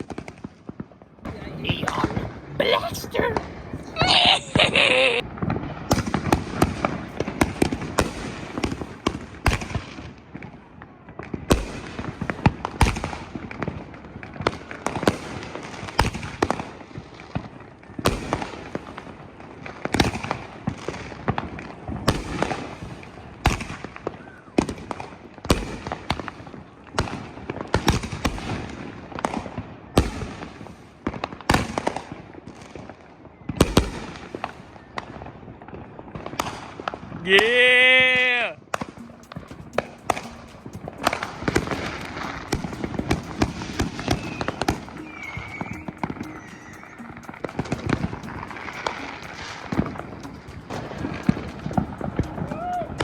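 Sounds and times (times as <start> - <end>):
fireworks launching and bursting: 0.0 - 32.9, 38.6 - 53.0
fireworks crackling: 0.0 - 53.0.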